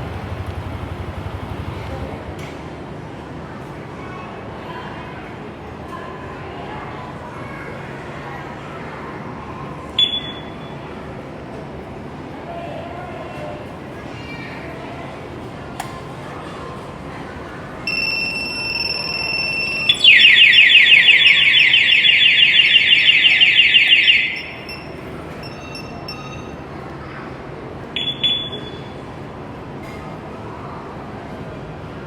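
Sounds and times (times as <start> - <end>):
alarm steady high beep: 10.0 - 10.6, 17.9 - 26.6, 28.0 - 29.0
warbling alarm siren: 17.9 - 25.0
alarm short chirps: 17.9 - 26.5, 28.0 - 29.0.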